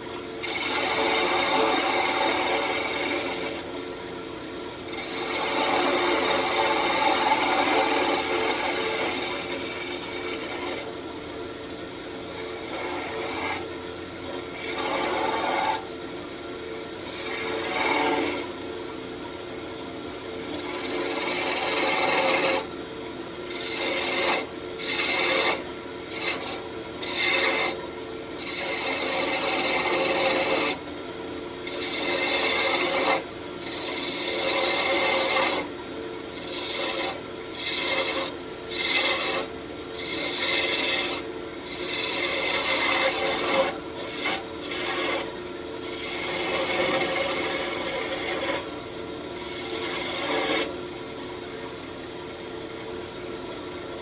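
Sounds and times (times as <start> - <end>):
wood lathe humming: 0.4 - 3.8, 4.8 - 10.9, 12.2 - 15.9, 17.0 - 18.7, 20.4 - 22.8, 23.4 - 27.8, 28.4 - 30.9, 31.6 - 48.7.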